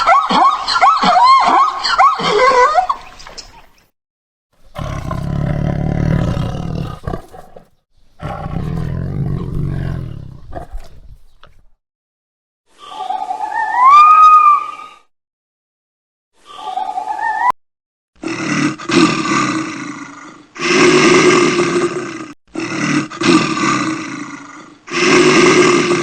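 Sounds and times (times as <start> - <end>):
high squealing animal calls: 0.0 - 3.1, 12.8 - 15.1, 16.5 - 17.5
big cat roaring: 4.6 - 11.3, 18.2 - 26.0.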